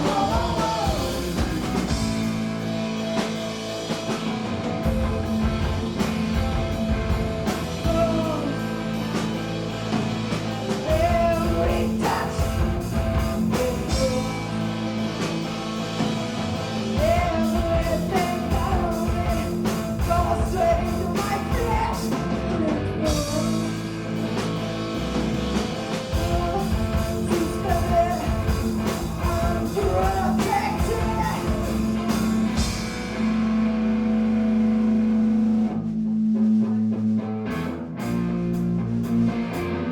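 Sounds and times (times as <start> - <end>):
person singing: 0.0 - 1.9, 7.8 - 9.2, 10.8 - 15.0, 16.9 - 23.9, 26.1 - 32.6
punk rock band playing live: 0.0 - 39.9.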